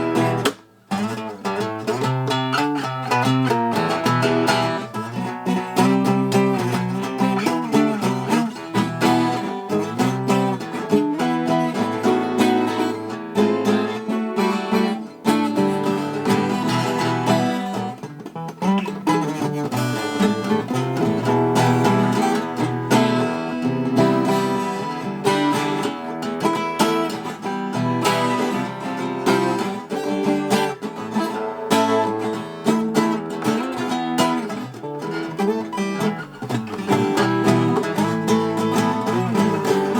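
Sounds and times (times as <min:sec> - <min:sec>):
plucked string instrument music: 0:00.0 - 0:39.9.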